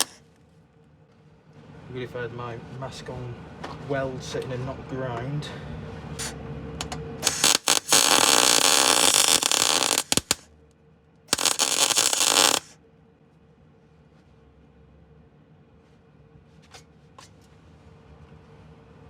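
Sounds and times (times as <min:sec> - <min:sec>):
welder crackling hiss: 0:00.0 - 0:00.2, 0:07.2 - 0:10.4, 0:11.3 - 0:12.7.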